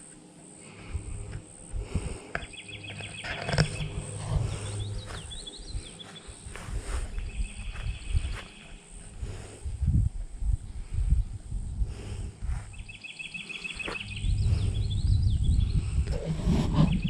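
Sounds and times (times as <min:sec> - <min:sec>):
insect chirping: 0:00.0 - 0:17.0
low rumbling noise: 0:00.7 - 0:17.0
bird calls: 0:02.2 - 0:09.5, 0:12.7 - 0:17.0.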